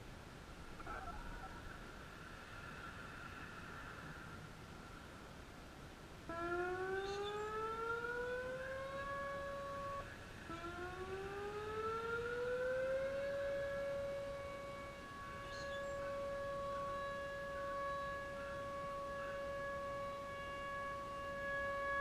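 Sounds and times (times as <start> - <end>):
electronic siren rising tone: 6.3 - 22.0.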